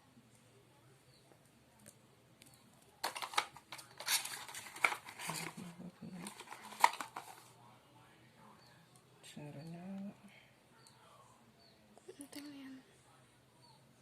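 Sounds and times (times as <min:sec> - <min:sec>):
rustling: 0:03.0 - 0:07.6.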